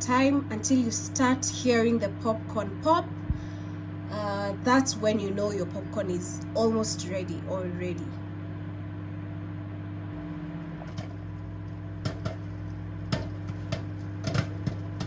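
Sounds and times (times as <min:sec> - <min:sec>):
microwave oven humming: 0:00.0 - 0:15.0
popcorn popping: 0:10.5 - 0:15.0.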